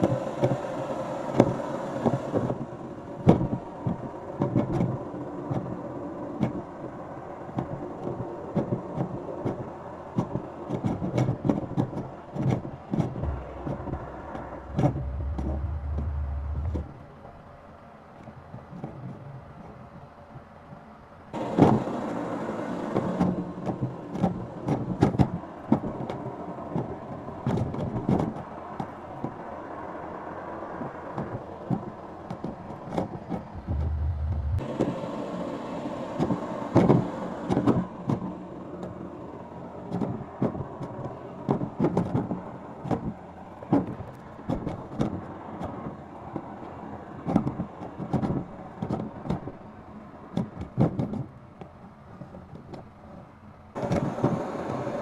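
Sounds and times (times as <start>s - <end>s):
knocks and clatter: 12.5s - 17.0s, 33.3s - 34.6s.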